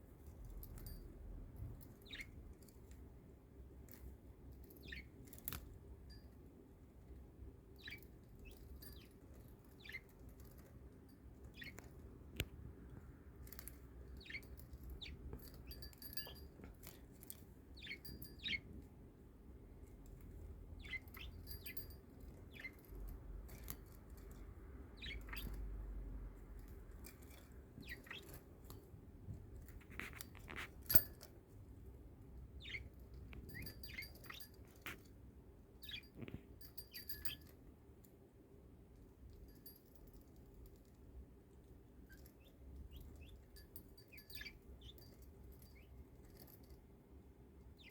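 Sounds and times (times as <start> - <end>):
budgerigar chirping: 4.8 - 5.1, 9.7 - 10.1, 17.8 - 18.7, 20.8 - 21.9, 25.0 - 25.6, 27.8 - 28.4, 32.6 - 34.5, 35.8 - 36.2.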